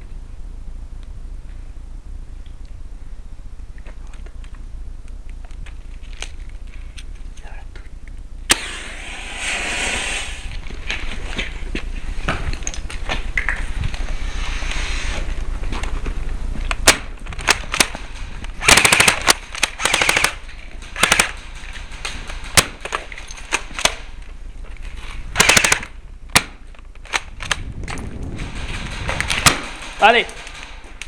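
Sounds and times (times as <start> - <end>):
airsoft gun shots and bursts: 8.5 - 10.4, 16.8 - 24.1, 25.3 - 27.6, 28.3 - 31.0
airsoft gun hiss: 8.5 - 10.6, 14.1 - 15.3.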